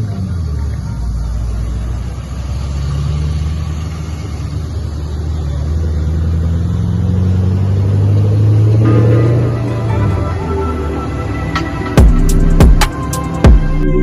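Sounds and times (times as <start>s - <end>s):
engine running under load: 0.0s - 14.0s.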